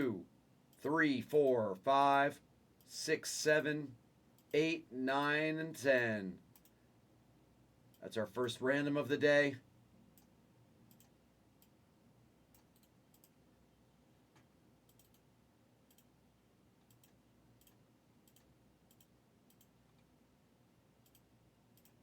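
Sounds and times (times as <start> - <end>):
faint sharp clicks: 6.5 - 6.8, 12.5 - 13.4, 16.8 - 20.1, 21.0 - 22.0.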